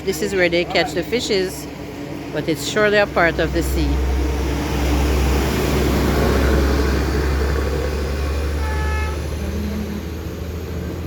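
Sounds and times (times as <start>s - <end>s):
traffic rumble: 0.0s - 11.0s
vehicle horn toot: 8.6s - 9.3s.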